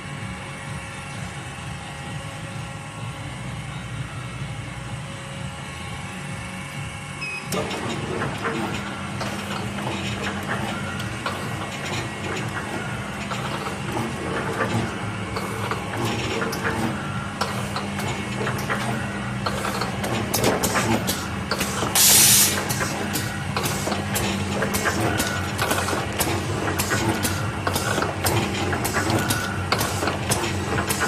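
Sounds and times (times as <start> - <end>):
packing machine humming: 0.0 - 31.0
machine parts clicking and clattering: 7.5 - 31.0.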